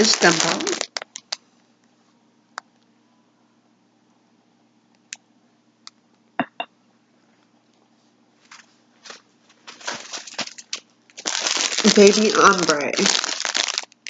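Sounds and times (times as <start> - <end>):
soft plastic rustle: 0.0 - 1.6, 7.9 - 14.0.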